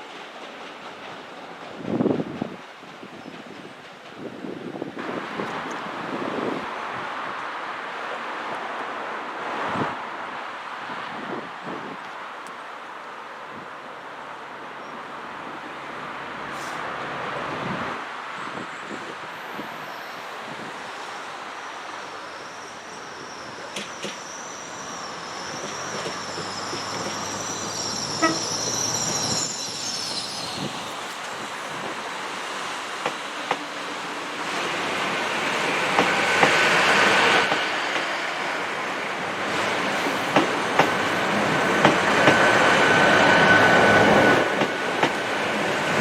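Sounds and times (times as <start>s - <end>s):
train wheels squealing: 18.6s - 31.9s, 35.5s - 46.0s.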